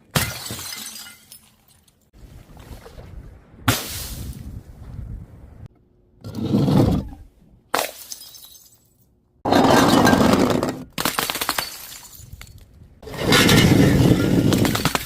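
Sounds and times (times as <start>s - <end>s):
glass bottles smashing: 0.1s - 1.9s, 7.8s - 9.0s, 11.0s - 12.6s.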